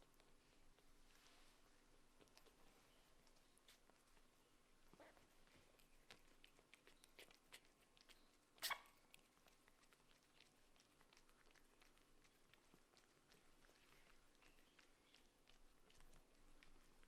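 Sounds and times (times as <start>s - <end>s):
kittens scratching and clicking: 5.4s - 17.0s.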